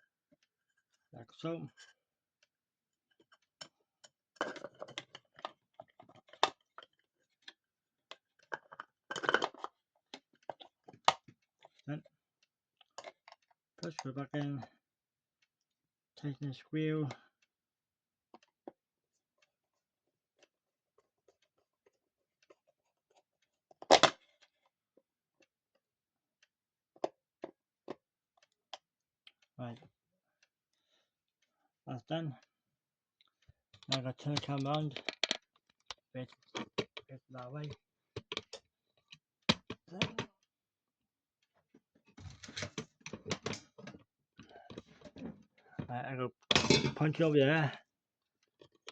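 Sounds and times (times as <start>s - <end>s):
clock handling clicks and knocks: 3.2s - 11.8s, 12.8s - 14.7s, 33.6s - 40.4s, 42.2s - 47.4s, 48.5s - 48.9s.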